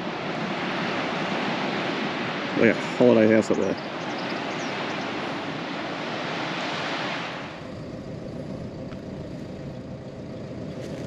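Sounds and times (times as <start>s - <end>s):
car road and engine rumble: 7.3s - 11.0s.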